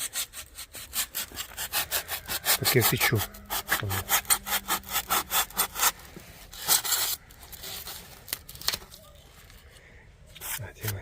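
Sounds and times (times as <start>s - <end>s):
hand saw cutting: 0.0s - 6.0s
long scrape: 0.0s - 8.2s.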